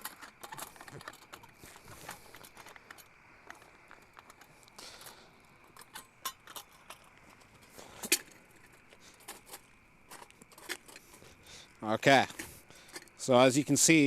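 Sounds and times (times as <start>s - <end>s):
metallic clinks of stove handled: 5.7s - 8.4s.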